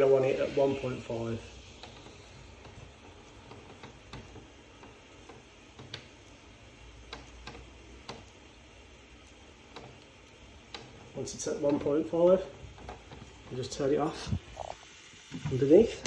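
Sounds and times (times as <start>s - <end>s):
water hissing through pipe: 0.0s - 3.4s, 13.6s - 16.0s.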